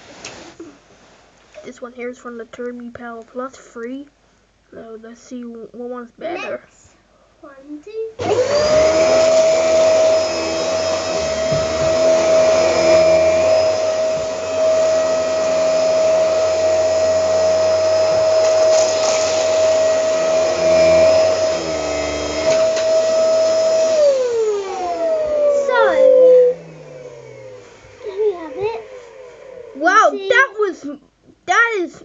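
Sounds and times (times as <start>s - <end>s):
vacuum motor switching off: 8.2s - 30.2s
vacuum cleaner running: 8.2s - 30.7s.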